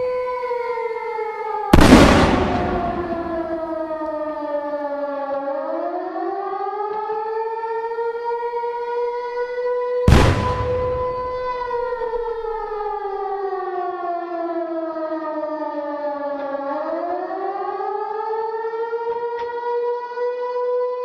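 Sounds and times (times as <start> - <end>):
air-raid siren wailing: 0.0 - 21.0
loud bomb blast: 1.8 - 3.7, 10.1 - 12.7.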